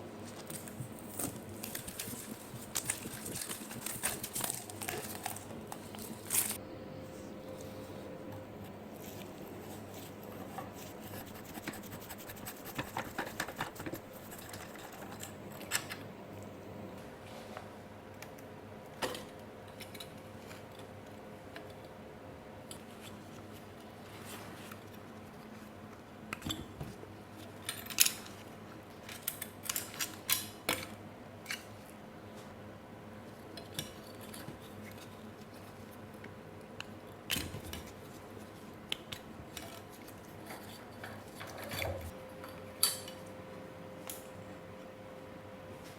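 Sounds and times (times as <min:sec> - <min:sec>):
steady low hum: 0:00.0 - 0:18.1.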